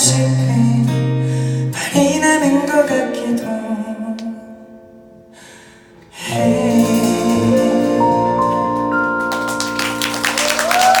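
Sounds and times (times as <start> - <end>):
live band closing chord: 6.0 - 10.7
audience clapping: 9.3 - 11.0.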